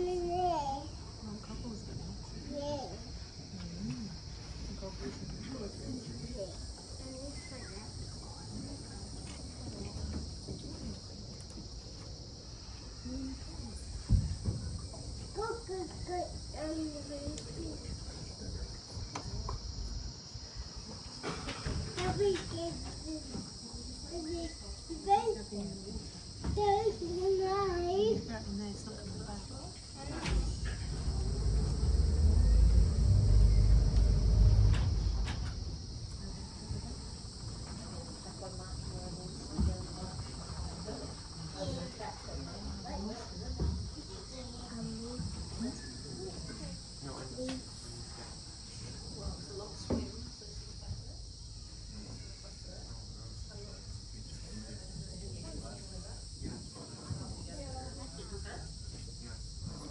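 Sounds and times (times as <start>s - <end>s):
insect chorus: 0.0s - 59.9s
low rumble: 30.5s - 36.2s.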